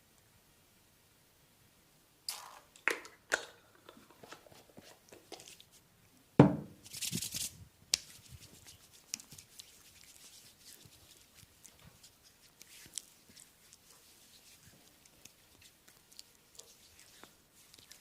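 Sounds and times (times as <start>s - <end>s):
brisk rubbing on skin: 6.8s - 18.0s.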